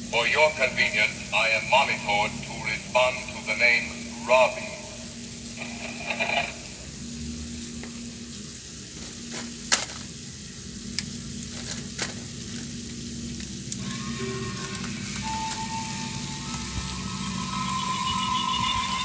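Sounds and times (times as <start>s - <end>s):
toy robot motor humming: 13.7s - 19.0s
brief electronic tone: 13.8s - 19.0s.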